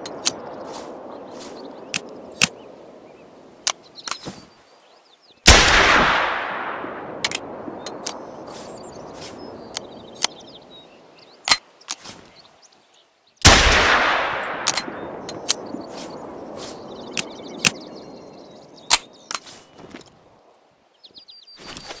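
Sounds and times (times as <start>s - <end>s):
quieter sharp cracks: 0.0s - 3.0s, 5.5s - 10.5s, 13.4s - 20.1s
loud pistol shot echoing: 5.5s - 7.7s, 13.5s - 16.3s.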